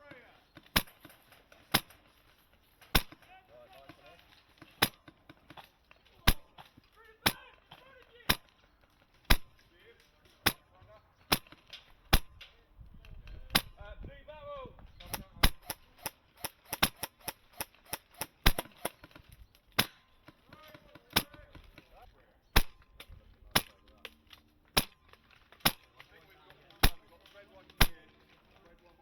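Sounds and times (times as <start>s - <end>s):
airsoft gunshots: 2.9s - 3.2s, 6.2s - 7.6s, 9.3s - 9.6s, 11.3s - 12.4s, 15.0s - 19.0s, 22.6s - 22.8s, 26.8s - 27.1s.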